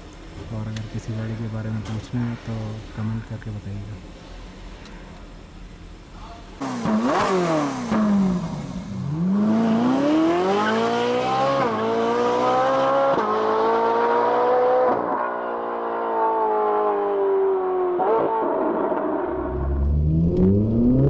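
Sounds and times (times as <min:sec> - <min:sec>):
car engine revving and accelerating: 0:06.6 - 0:21.0.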